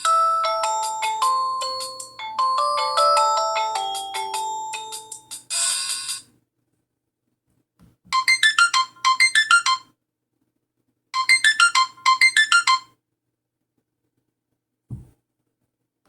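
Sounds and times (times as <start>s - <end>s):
mobile phone electronic beeps: 8.2s - 9.8s, 11.2s - 12.9s.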